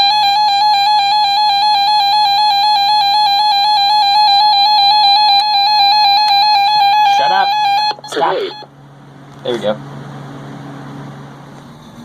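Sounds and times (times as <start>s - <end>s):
electronic alert tone: 0.0s - 8.7s.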